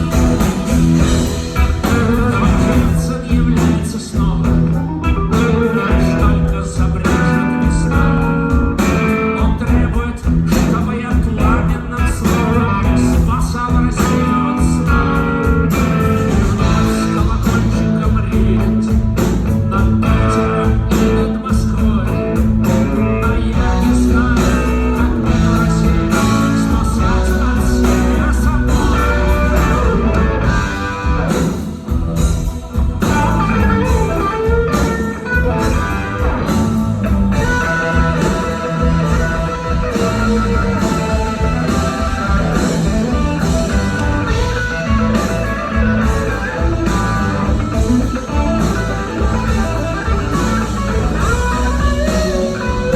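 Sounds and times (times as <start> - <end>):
rock band instrumental: 0.0 - 52.9.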